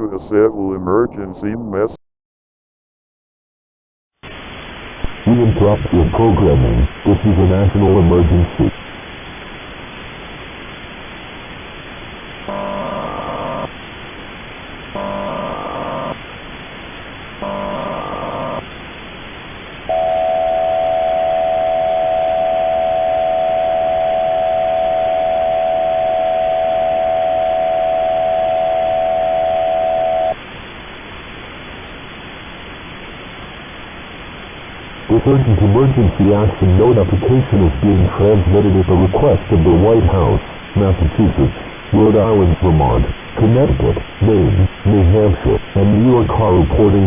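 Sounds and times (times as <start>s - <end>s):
background hiss: 0.0s - 2.0s, 4.2s - 47.0s
steady attention signal tone: 12.4s - 13.7s, 14.9s - 16.2s, 17.4s - 18.7s, 19.9s - 30.4s.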